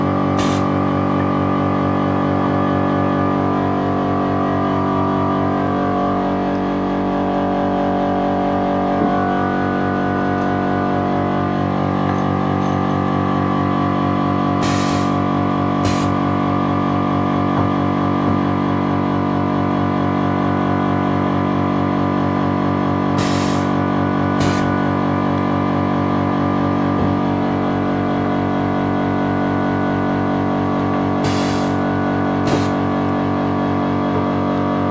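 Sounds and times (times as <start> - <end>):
machine mechanical hum: 0.0 - 34.9
short hissing bursts: 0.4 - 0.7, 14.6 - 15.2, 15.8 - 16.1, 23.2 - 23.7, 31.2 - 31.8.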